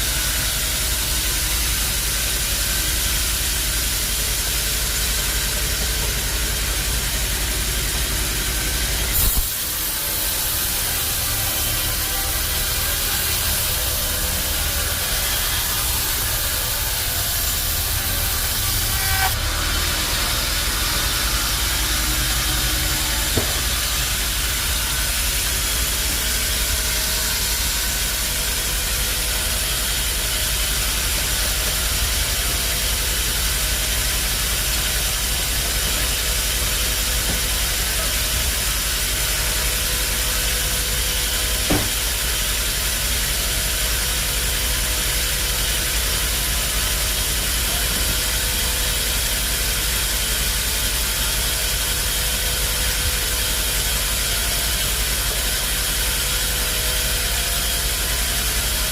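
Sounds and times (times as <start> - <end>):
sawmill machinery hiss: 0.0 - 58.9
single knock: 23.3 - 23.7, 41.7 - 42.0.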